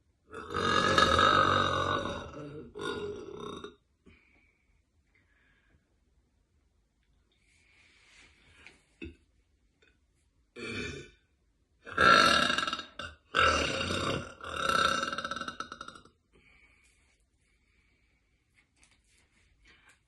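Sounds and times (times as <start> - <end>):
woman belching: 0.3 - 3.8, 10.6 - 11.2, 11.9 - 16.1.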